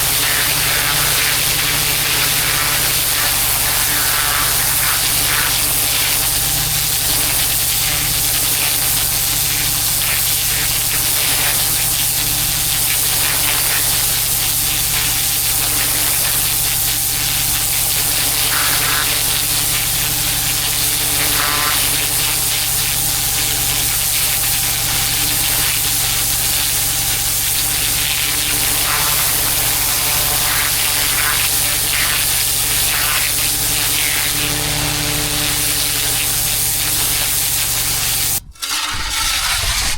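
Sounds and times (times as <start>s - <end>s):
motor humming: 0.0s - 9.1s, 26.8s - 39.9s
pressure washer spraying water: 0.0s - 38.4s.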